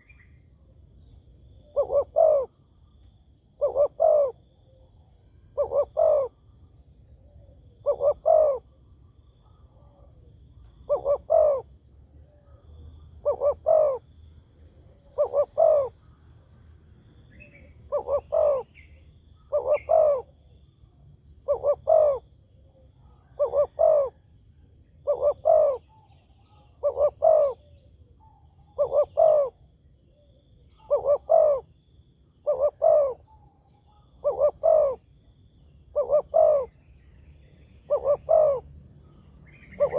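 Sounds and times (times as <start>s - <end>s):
dove cooing: 0.0s - 0.3s, 1.0s - 2.7s, 3.5s - 6.6s, 7.2s - 8.8s, 9.4s - 12.6s, 13.2s - 14.1s, 15.0s - 16.1s, 17.3s - 20.5s, 21.4s - 24.3s, 24.9s - 31.8s, 32.4s - 35.1s, 35.8s - 39.9s.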